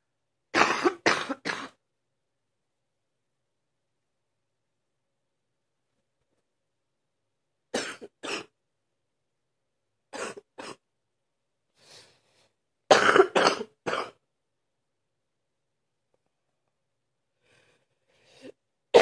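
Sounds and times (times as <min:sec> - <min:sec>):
person coughing: 0:00.6 - 0:01.8, 0:07.8 - 0:08.6, 0:10.2 - 0:10.8, 0:12.9 - 0:14.2.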